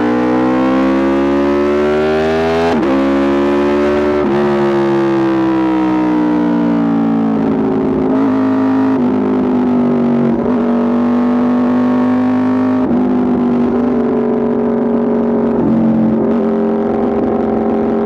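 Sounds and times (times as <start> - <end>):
motorcycle engine running: 6.7 - 18.0.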